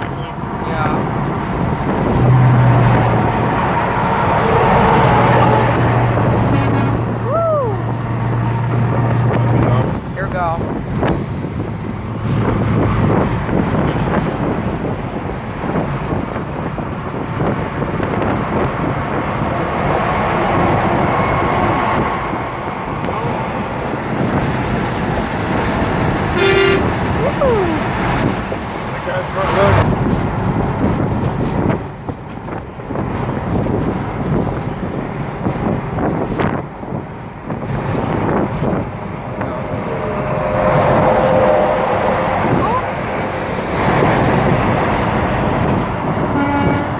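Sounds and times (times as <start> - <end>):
road traffic: 0.0 - 46.9
wind buffeting microphone: 0.0 - 46.9
car horn toot: 6.4 - 7.1, 26.3 - 27.2, 46.2 - 46.9.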